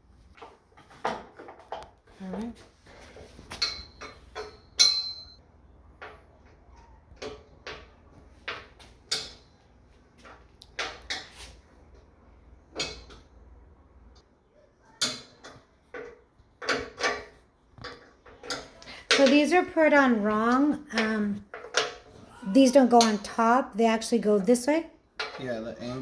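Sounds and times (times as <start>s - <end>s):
knocks and clinks of tools: 3.5s - 5.4s, 12.7s - 13.4s, 25.2s - 25.6s
sharp metal clink ringing: 4.6s - 5.4s.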